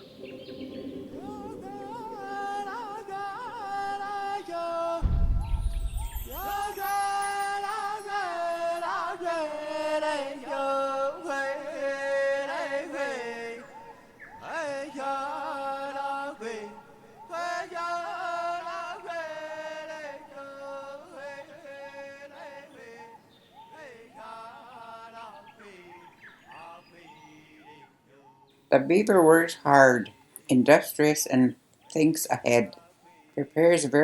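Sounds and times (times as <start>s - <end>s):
chant-like melody of sliding notes: 0.0s - 4.9s
low thump: 5.0s - 7.4s.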